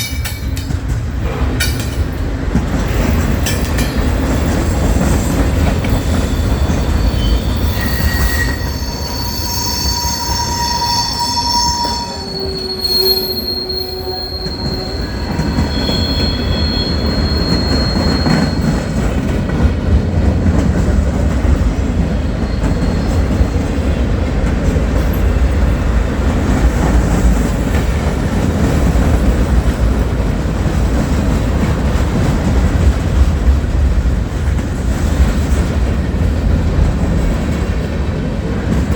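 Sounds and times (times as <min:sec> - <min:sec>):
train rumbling on rails: 0:00.0 - 0:38.9
train wheels squealing: 0:03.5 - 0:19.3, 0:22.3 - 0:24.0.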